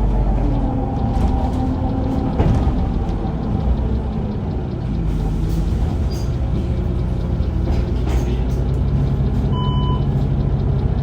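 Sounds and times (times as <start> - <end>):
bus engine drone: 0.0 - 11.0
short electronic beep: 9.5 - 10.1.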